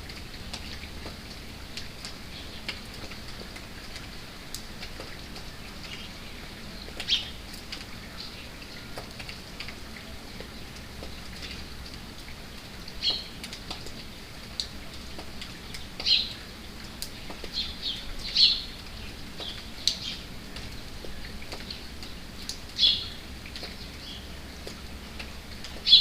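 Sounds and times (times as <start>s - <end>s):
rain pattering: 0.0s - 26.0s
birds chirping: 15.7s - 16.5s, 17.2s - 20.3s, 22.8s - 24.3s.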